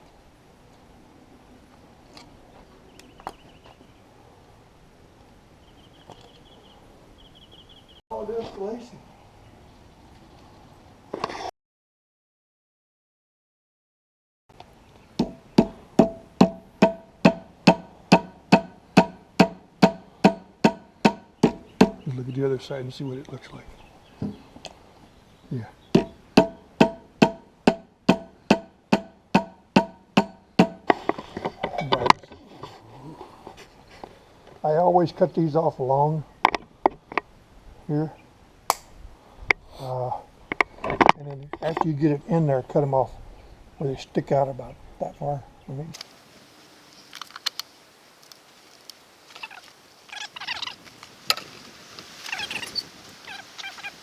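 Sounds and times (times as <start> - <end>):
hammer blows on metal: 15.2 - 22.0, 25.9 - 31.0
fowl chattering calls: 49.4 - 50.8, 52.2 - 54.0.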